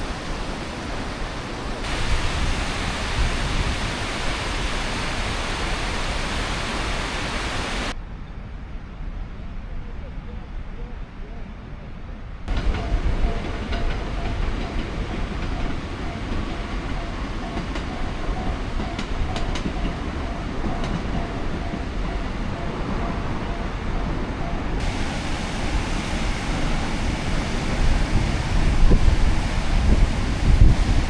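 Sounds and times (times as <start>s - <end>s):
vehicle rumble and hiss: 0.0s - 8.0s, 24.7s - 31.0s.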